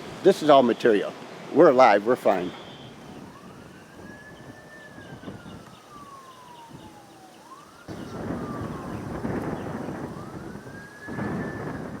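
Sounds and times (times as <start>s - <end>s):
emergency vehicle siren wailing: 2.3s - 12.0s.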